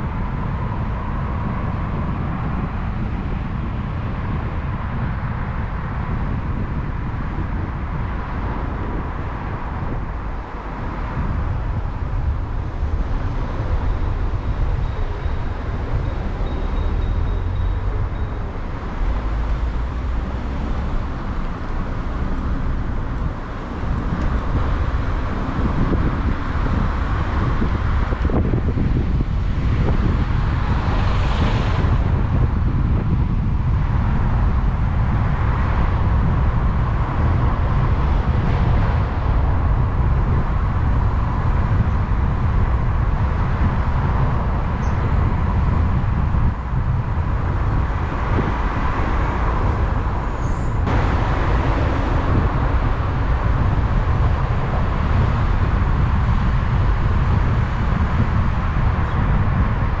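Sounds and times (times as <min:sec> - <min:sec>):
moving vehicle rumble: 0:00.0 - 1:00.0.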